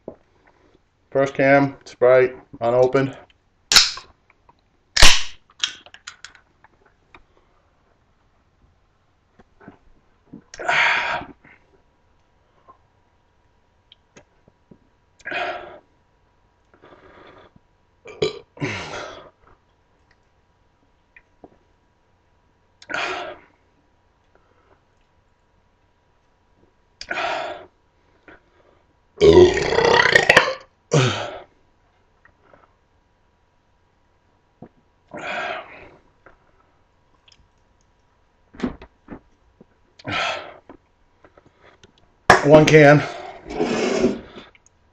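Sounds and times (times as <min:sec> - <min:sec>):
man belching: 0:18.1 - 0:18.4, 0:29.2 - 0:31.3.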